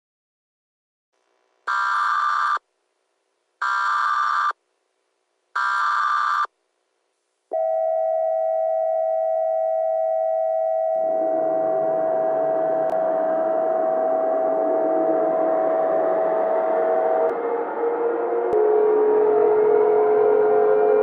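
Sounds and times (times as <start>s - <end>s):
rough static noise: 1.2s - 7.5s
steady attention tone: 7.5s - 20.8s.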